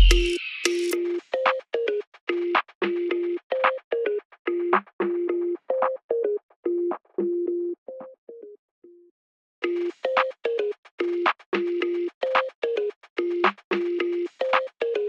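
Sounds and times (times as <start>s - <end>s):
simple electronic tune: 0.0s - 1.0s.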